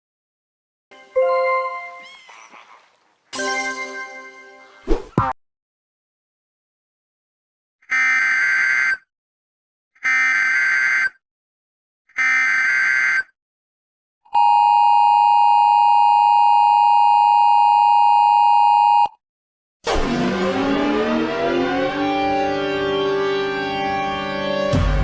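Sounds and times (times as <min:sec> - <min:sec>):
music with electric guitar: 0:22.0 - 0:25.0.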